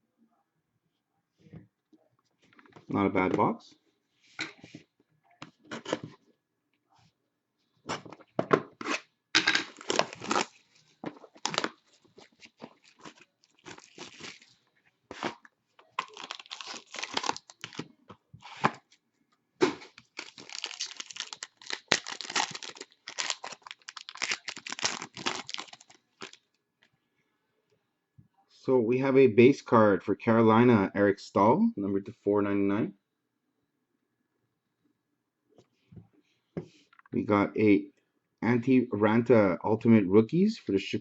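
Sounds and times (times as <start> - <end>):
plastic wrap ripping and crinkling: 9.4 - 17.9, 19.6 - 26.4.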